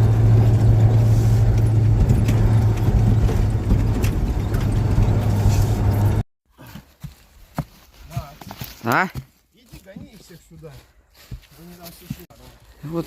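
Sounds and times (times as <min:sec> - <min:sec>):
truck engine drone: 0:00.0 - 0:06.2.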